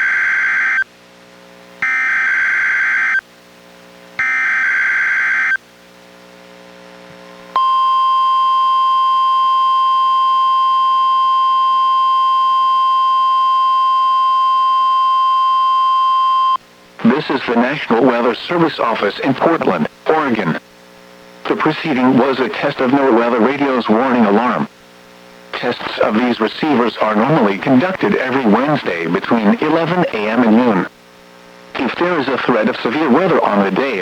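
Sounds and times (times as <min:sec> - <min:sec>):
steady warning alarm tone: 0:00.0 - 0:00.8, 0:01.8 - 0:03.2, 0:04.2 - 0:05.6, 0:07.6 - 0:16.6.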